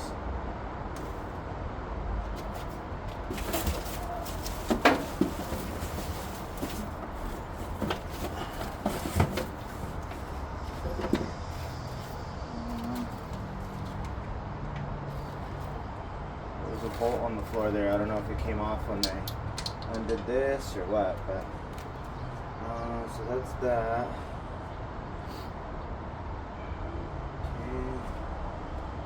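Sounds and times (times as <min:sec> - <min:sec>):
metal parts and tools clinking: 0:19.0 - 0:20.3.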